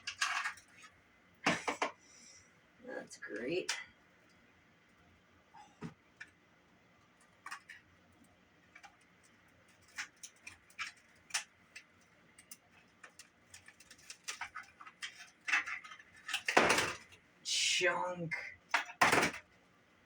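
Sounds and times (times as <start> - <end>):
small plastic and metal parts clicking: 0.0 - 0.9, 8.7 - 17.2.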